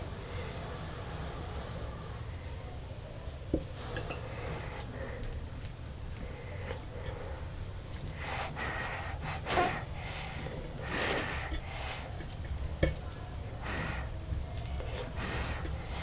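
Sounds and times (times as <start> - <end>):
steady low hum: 0.0 - 16.0
noisy breaths or sniffs: 6.1 - 12.4, 13.5 - 16.0.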